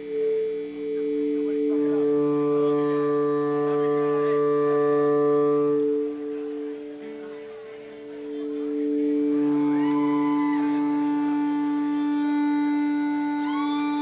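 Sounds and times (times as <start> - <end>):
band playing droning notes: 0.0 - 14.0
sliding high notes: 0.0 - 14.0.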